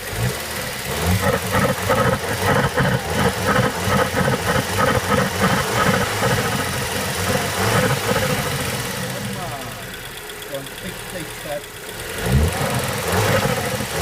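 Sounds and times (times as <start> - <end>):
turbocharged engine running: 0.0 - 14.0
rhythmic surging from air filter: 1.0 - 14.0.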